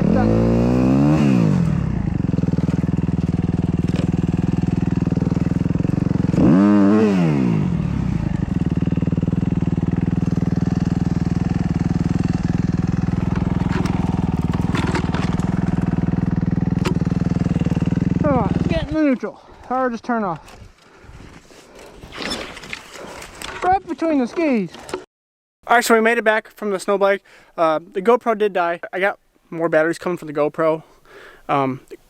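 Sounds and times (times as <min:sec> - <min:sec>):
dirt bike engine idling: 0:00.0 - 0:19.2.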